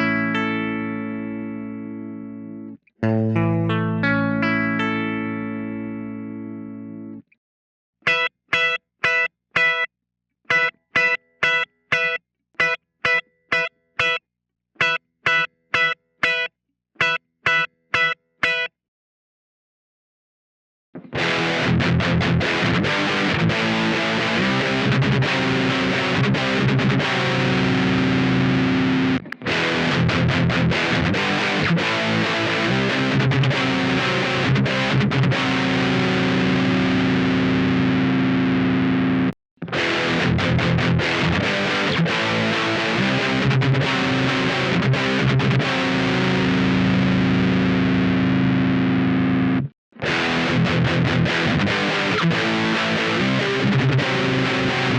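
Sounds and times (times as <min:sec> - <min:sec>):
distorted electric guitar: 0:00.0 - 0:07.2, 0:08.0 - 0:09.9, 0:10.5 - 0:14.2, 0:14.8 - 0:18.7, 0:21.0 - 0:54.9.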